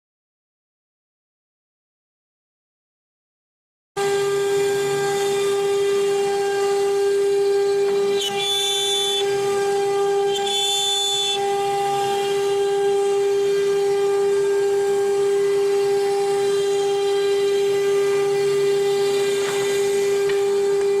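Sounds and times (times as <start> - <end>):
router spindle high whine: 4.0 - 21.0.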